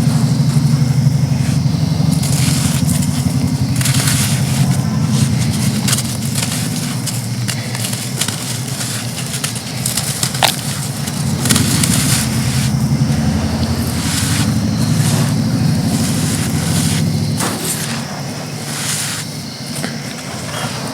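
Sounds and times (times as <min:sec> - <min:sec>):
low rumble: 0:00.0 - 0:08.8, 0:09.9 - 0:17.4
sand crumbling and crunching: 0:00.0 - 0:20.9.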